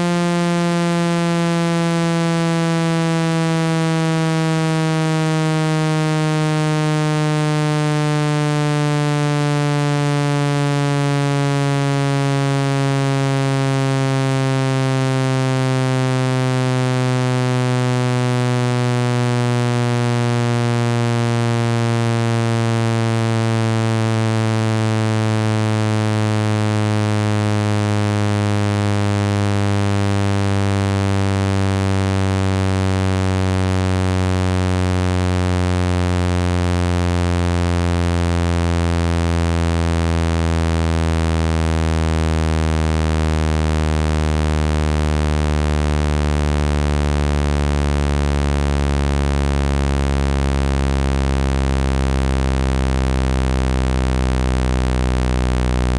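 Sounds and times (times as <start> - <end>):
buzzy low tone sliding down: 0.0 - 55.9.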